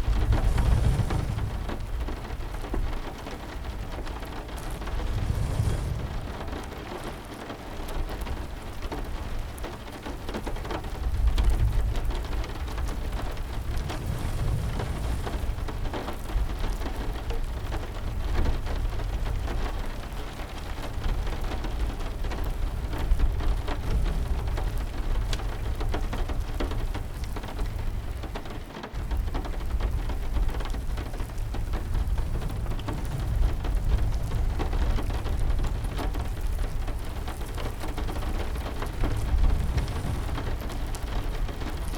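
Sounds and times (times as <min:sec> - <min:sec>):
deep low rumble: 0:00.0 - 0:07.2, 0:11.2 - 0:17.4, 0:29.0 - 0:41.9
fire crackling: 0:00.0 - 0:41.9
heavy rain: 0:00.0 - 0:41.9.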